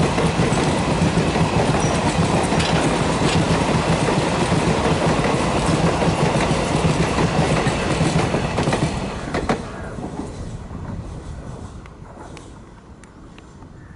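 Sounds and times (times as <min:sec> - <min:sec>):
train wheels clattering over rail joints: 0:00.0 - 0:10.5.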